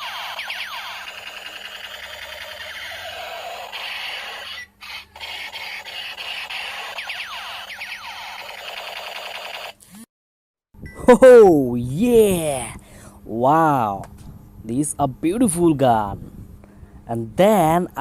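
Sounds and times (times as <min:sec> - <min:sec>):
toy gun buzzing laser tones: 0:00.0 - 0:09.8.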